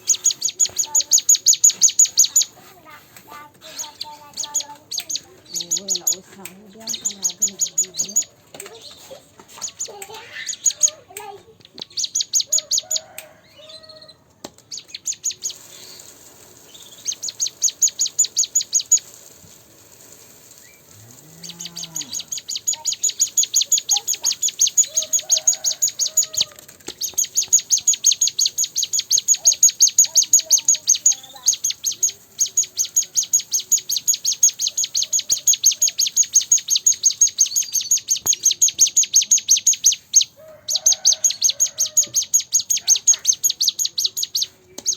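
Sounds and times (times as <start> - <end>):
bird singing rapid high chips: 0.0 - 44.9.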